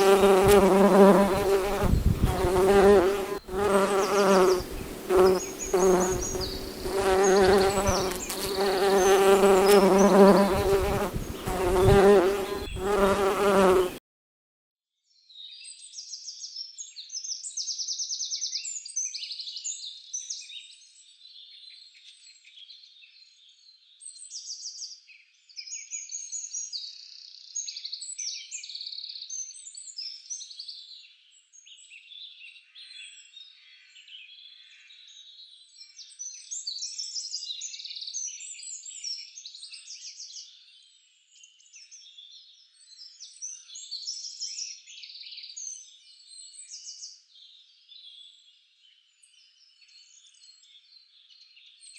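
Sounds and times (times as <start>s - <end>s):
birds trilling and chirping: 0.0s - 14.0s
insect buzzing: 0.0s - 14.0s.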